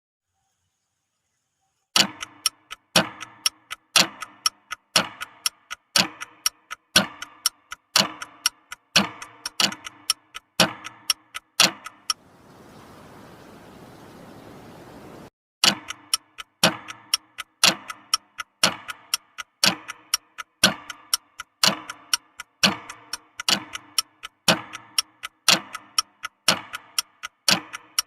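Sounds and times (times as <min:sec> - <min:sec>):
clock-like ticking: 0:02.0 - 0:12.2, 0:15.6 - 0:28.0
steady hiss: 0:12.2 - 0:15.3.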